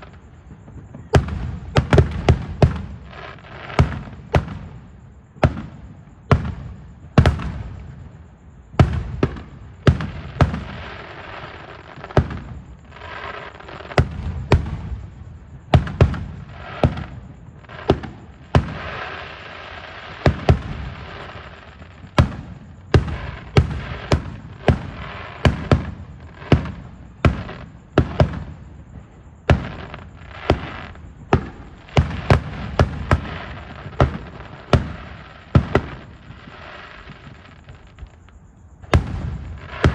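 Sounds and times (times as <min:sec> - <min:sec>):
fireworks crackling: 0:00.0 - 0:39.9
fireworks banging: 0:08.7 - 0:38.2, 0:38.8 - 0:39.9.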